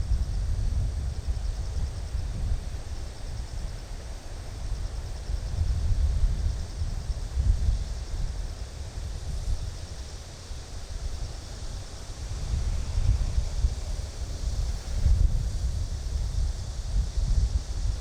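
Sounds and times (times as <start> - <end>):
wind buffeting microphone: 10.9 - 18.0.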